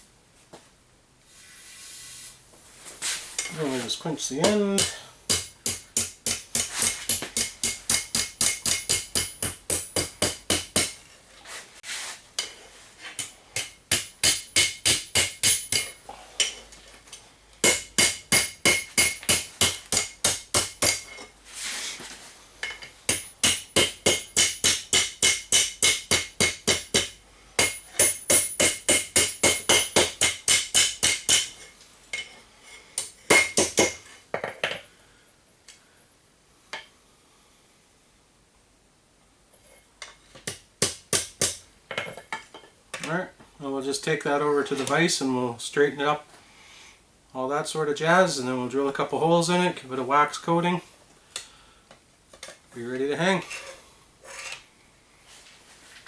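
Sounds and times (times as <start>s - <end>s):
hammer striking on anvil: 4.4s - 11.0s, 13.2s - 16.6s, 17.6s - 21.2s, 23.1s - 31.6s, 33.0s - 34.0s, 40.5s - 41.6s.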